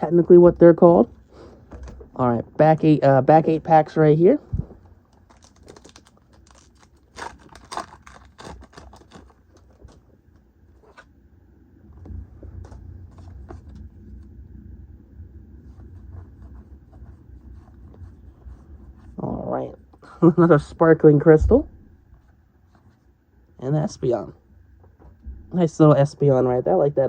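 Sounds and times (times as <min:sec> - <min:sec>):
foil pack crinkling: 0:04.9 - 0:11.1
low handling rumble: 0:11.3 - 0:27.0.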